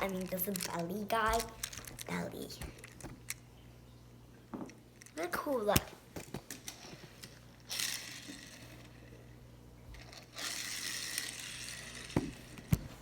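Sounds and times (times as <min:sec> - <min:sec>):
rustling handling noise: 0:00.0 - 0:03.3.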